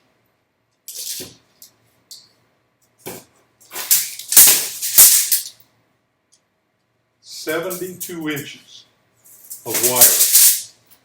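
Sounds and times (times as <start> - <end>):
tape measure rattling and scraping: 0.9 - 1.4, 3.2 - 5.6, 9.3 - 10.8.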